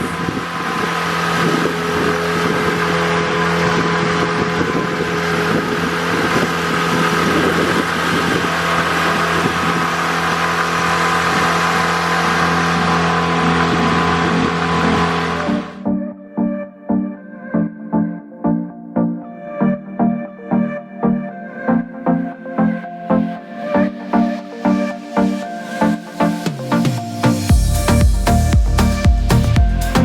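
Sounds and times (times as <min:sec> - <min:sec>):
motorboat engine running: 0:00.0 - 0:15.8, 0:26.4 - 0:30.0.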